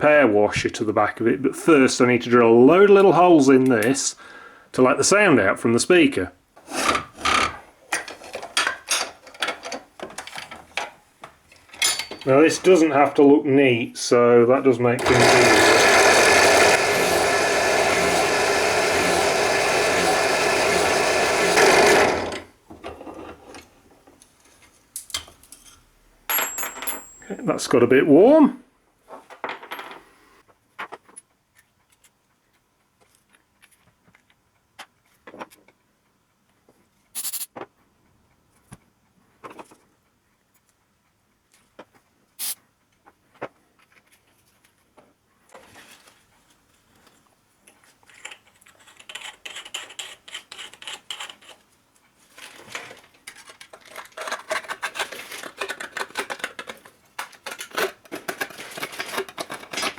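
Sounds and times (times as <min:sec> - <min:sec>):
metal parts clinking: 0:11.7 - 0:12.4
rapid clicking and rattling: 0:15.0 - 0:22.5.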